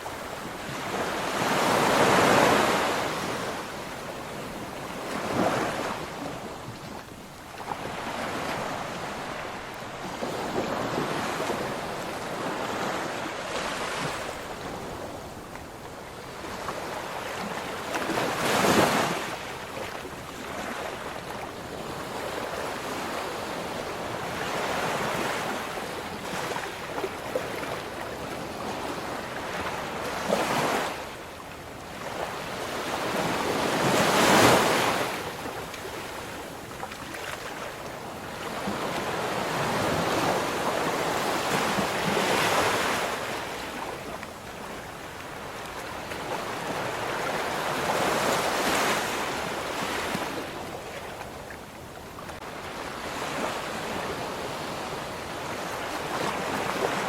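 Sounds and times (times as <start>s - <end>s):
ocean waves breaking on shore: 0.0s - 57.0s.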